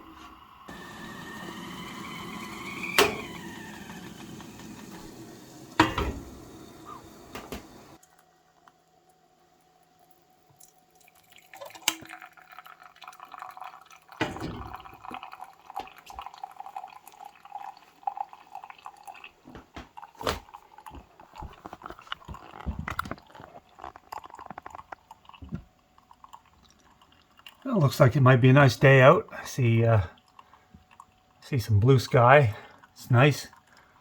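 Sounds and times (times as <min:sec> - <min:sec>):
liquid dripping and trickling: 0:09.7 - 0:28.0, 0:30.0 - 0:34.0.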